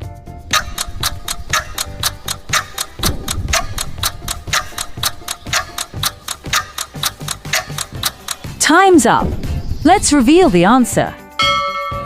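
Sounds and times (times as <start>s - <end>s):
clock ticking: 0.5s - 9.2s.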